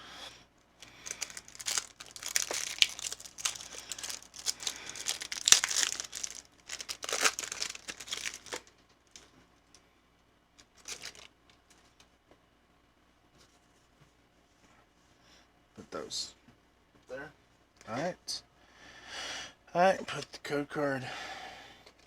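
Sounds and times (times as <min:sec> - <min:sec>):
foil wrapper crinkling and tearing: 0:00.8 - 0:09.3, 0:10.6 - 0:11.3.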